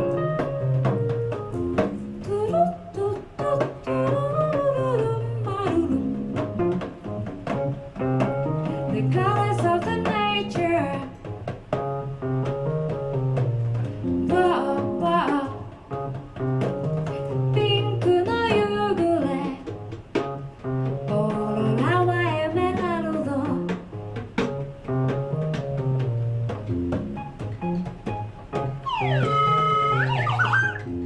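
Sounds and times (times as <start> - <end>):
low piano notes: 0.0 - 2.8, 20.7 - 31.0.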